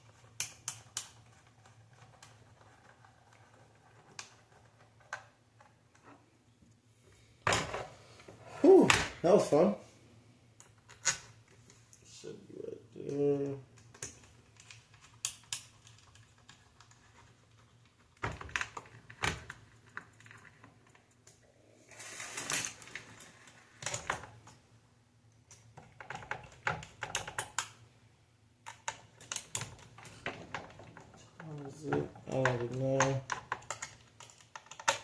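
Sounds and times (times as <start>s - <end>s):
plastic parts clicking and tapping: 13.0s - 21.4s, 25.5s - 27.8s, 28.6s - 35.0s.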